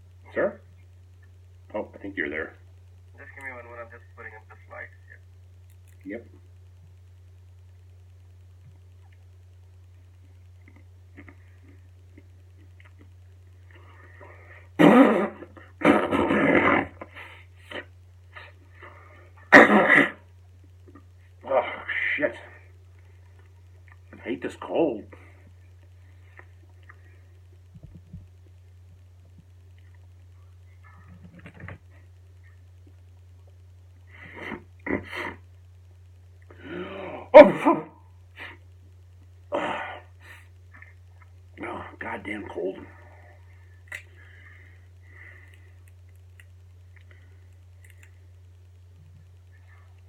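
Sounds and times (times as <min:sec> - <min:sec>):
man fake sneezing and coughing: 0:14.8 - 0:17.1, 0:19.4 - 0:20.3, 0:37.0 - 0:38.0.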